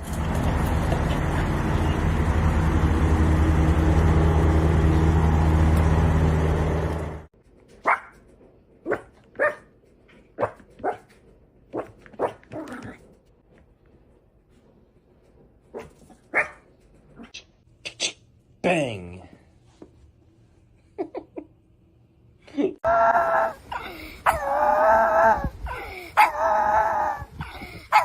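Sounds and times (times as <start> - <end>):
loud mechanical hum: 0.0 - 7.3
dog barking: 7.8 - 8.2, 8.8 - 9.7, 10.4 - 11.1, 15.7 - 16.6.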